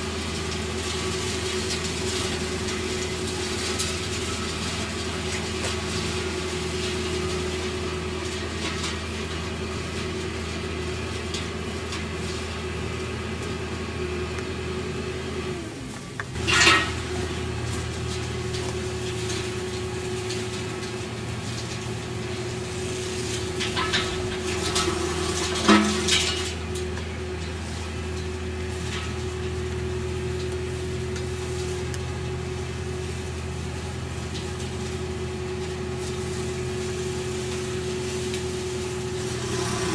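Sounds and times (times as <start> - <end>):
diesel engine humming: 0.0 - 39.9
metallic clank: 16.4 - 17.4, 23.3 - 26.7.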